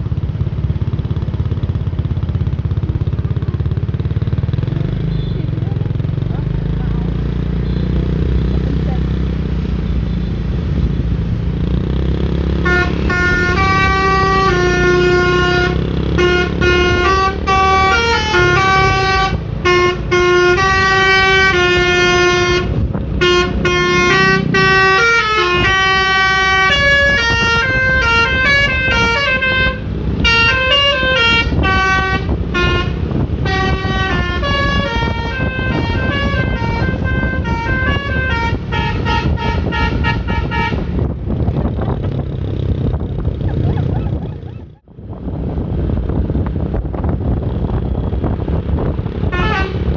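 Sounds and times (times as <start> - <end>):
low rumble of bus: 0.0 - 49.9
musical air horn tune: 12.6 - 40.9, 49.3 - 49.9.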